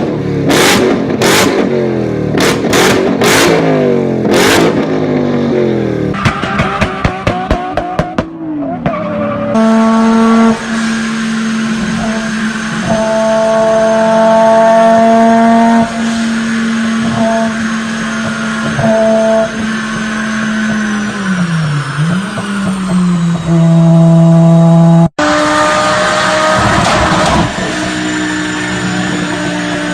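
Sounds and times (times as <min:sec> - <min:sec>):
car engine at high revs: 0:00.0 - 0:29.9
rushing noise: 0:25.2 - 0:29.9.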